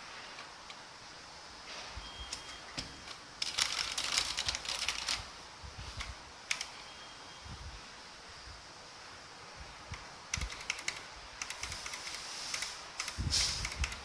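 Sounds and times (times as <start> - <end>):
mechanical keyboard typing: 3.4 - 5.3, 6.5 - 6.8, 10.3 - 14.0.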